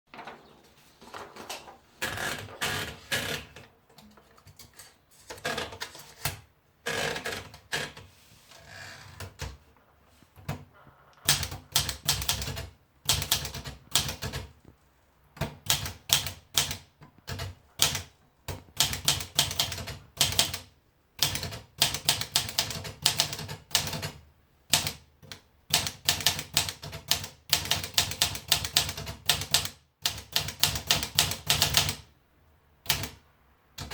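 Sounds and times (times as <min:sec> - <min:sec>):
manual typewriter keystrokes: 0:10.4 - 0:14.6, 0:15.4 - 0:32.1, 0:32.8 - 0:33.2.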